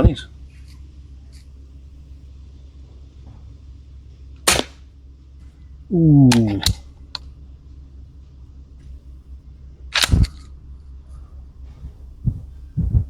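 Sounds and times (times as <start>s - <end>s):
air rifle shot crack: 4.5s - 5.0s, 9.9s - 10.6s.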